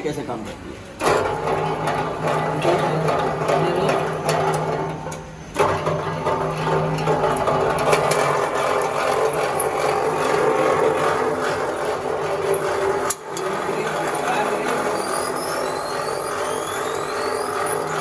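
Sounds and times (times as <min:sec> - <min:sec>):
rollers clattering and clicking: 0:00.9 - 0:18.0
wire stripping machine running: 0:01.0 - 0:18.0.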